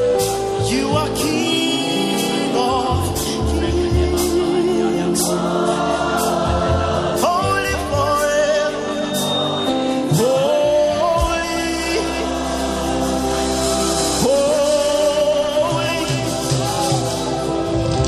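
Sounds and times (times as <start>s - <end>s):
voices singing held notes: 0.7s - 18.0s
band with drums: 12.5s - 18.0s.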